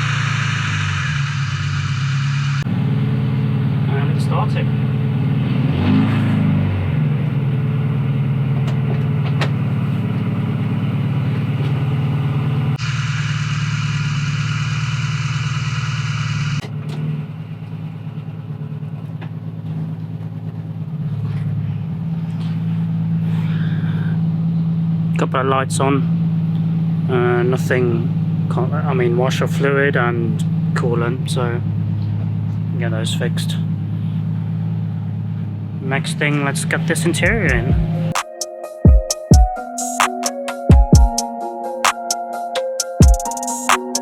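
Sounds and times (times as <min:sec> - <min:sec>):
hiss: 0:00.0 - 0:02.6, 0:12.8 - 0:16.6
car engine revving and idling: 0:00.0 - 0:38.3.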